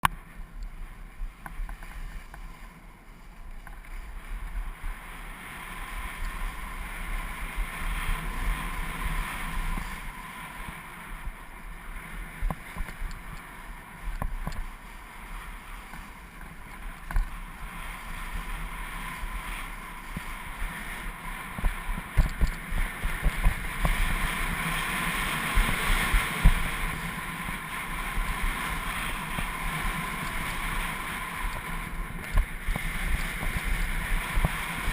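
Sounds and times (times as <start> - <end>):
skis scraping over snow: 0.1 - 34.9
wind on microphone: 0.1 - 34.9.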